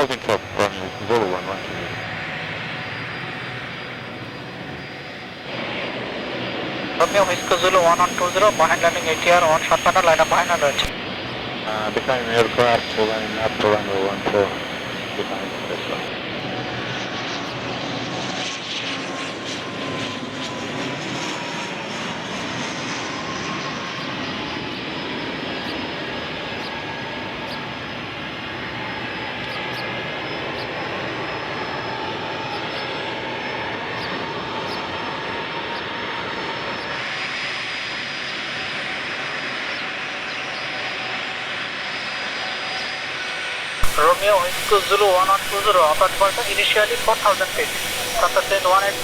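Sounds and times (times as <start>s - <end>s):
aircraft engines running: 0.0s - 2.2s, 7.0s - 11.0s, 11.7s - 16.1s, 43.8s - 49.0s
faint falling whine: 7.0s - 11.0s, 11.7s - 16.1s, 43.8s - 49.0s
bright hiss: 43.8s - 49.0s.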